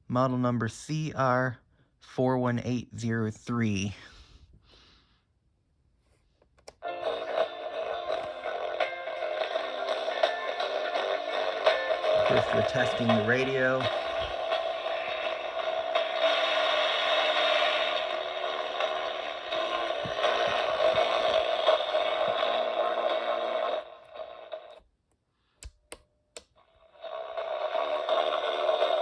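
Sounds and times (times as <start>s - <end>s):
noisy radio static from speaker: 7.1s - 24.8s, 26.9s - 29.0s
sharp clicks: 25.6s - 26.6s.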